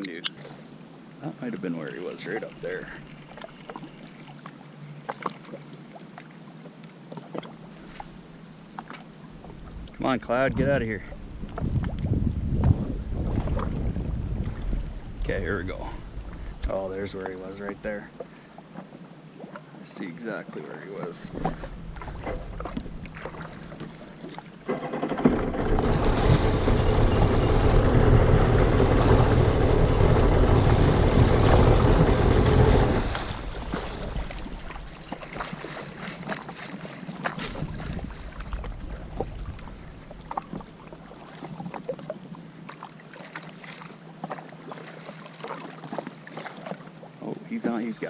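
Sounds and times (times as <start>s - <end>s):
watercraft engine revving: 21.1s - 36.3s.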